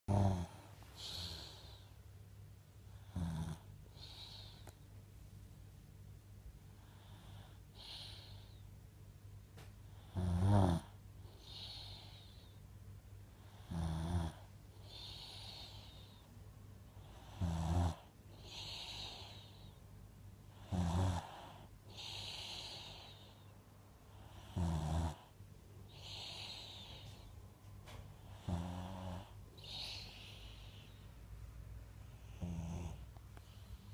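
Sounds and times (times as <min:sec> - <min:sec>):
loud low snores: 0:00.1 - 0:01.8, 0:03.0 - 0:04.5, 0:10.0 - 0:12.0, 0:13.5 - 0:15.9, 0:17.1 - 0:19.4, 0:20.6 - 0:23.2, 0:24.4 - 0:25.3, 0:28.3 - 0:30.3, 0:32.2 - 0:33.1.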